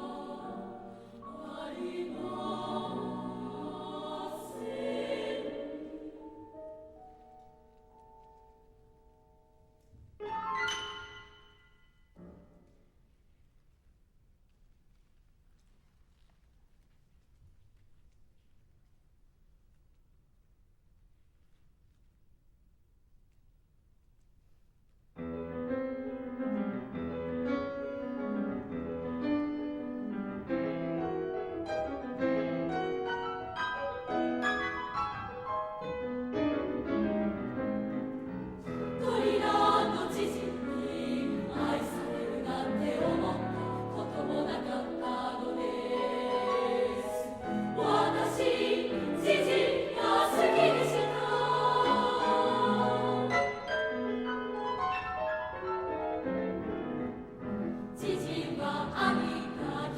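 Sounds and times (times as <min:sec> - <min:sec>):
girls' chorus singing: 0:00.0 - 0:07.0, 0:38.7 - 0:53.7, 0:58.0 - 0:59.9
piano: 0:00.0 - 0:23.8, 0:25.0 - 0:59.9.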